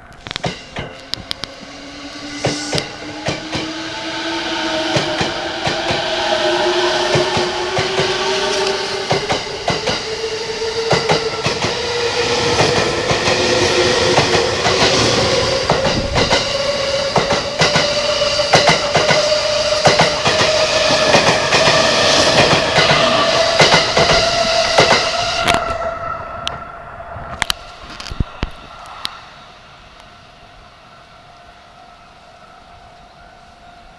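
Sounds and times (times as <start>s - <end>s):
wheels clattering on rail joints: 7.0s - 26.6s.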